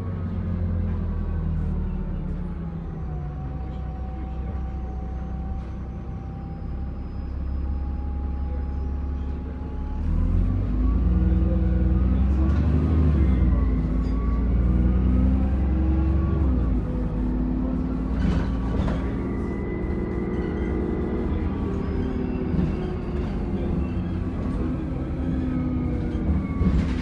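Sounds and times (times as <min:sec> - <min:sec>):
bus engine pulling away: 0:00.0 - 0:27.0
high turbo whine: 0:13.2 - 0:27.0.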